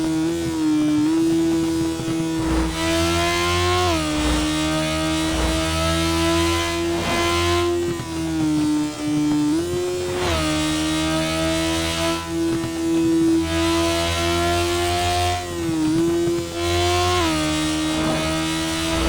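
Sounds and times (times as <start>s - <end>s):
motorcycle engine revving high: 1.0s - 8.6s, 9.2s - 12.4s, 16.6s - 19.0s.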